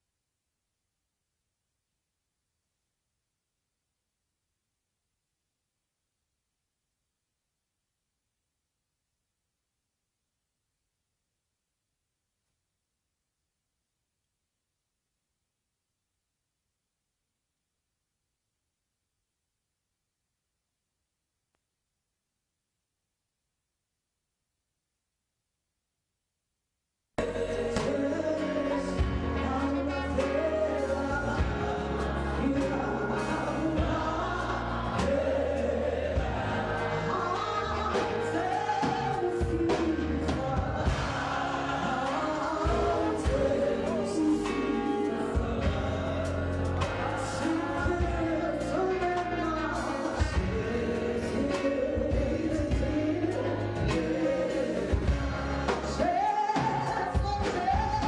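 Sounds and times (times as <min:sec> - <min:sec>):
band with bass and drums: 0:27.2 - 0:58.0
gospel choir singing: 0:27.2 - 0:58.0.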